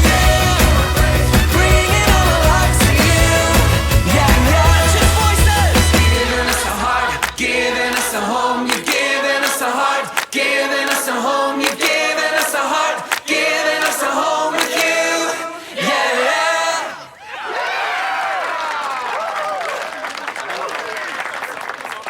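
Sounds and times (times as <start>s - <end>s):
sharp percussive beats: 0.0s - 9.6s
group singing in harmony: 0.0s - 17.2s.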